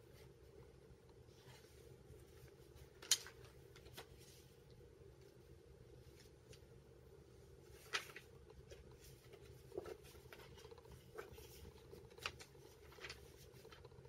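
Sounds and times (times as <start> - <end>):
paper rustling and tapping: 2.8 - 4.3, 7.7 - 14.0.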